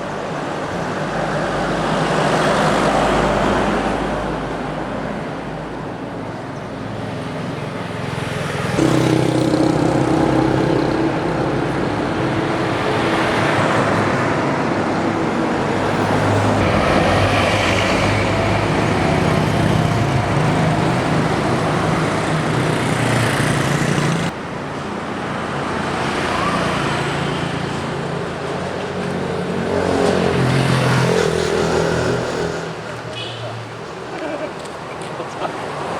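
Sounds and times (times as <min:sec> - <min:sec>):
vehicles passing by: 0:00.0 - 0:35.9.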